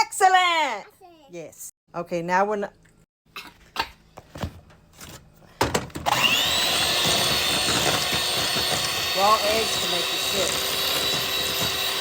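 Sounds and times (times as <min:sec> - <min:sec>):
electric mixer motor whining: 0:06.0 - 0:12.0.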